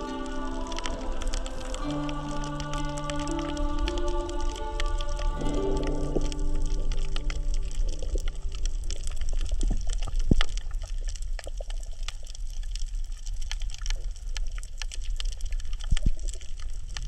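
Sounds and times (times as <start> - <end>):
low rumble of moving water: 0.0 - 17.0
crackle of small clicks underwater: 7.1 - 17.0.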